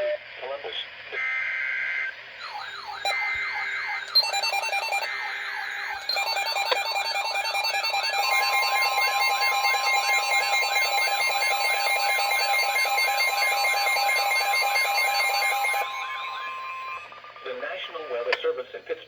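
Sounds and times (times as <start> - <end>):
warbling electronic alarm: 1.2 - 17.6
steady high tone: 2.4 - 17.4.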